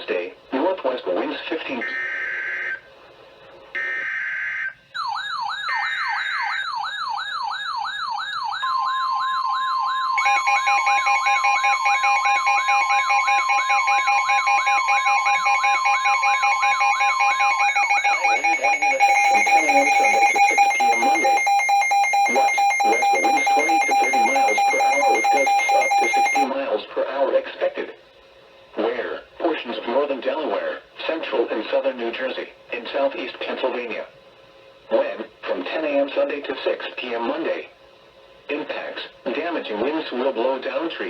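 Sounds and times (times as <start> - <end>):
long steady alert tone: 3.8 - 26.5
wailing siren: 3.8 - 26.5
rapid pulsing beep: 8.6 - 26.5
short data bursts: 17.2 - 26.5.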